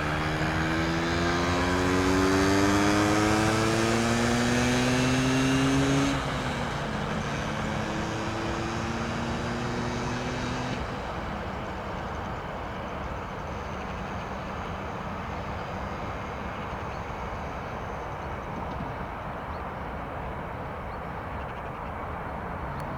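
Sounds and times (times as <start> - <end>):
freight wagons rolling past: 0.0 - 5.0
electric locomotive hum: 0.0 - 18.3.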